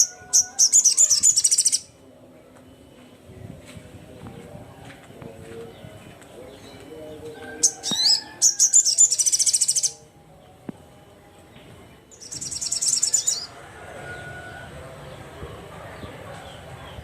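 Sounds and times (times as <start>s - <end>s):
songbird trilling: 7.6s - 10.0s, 12.1s - 13.5s.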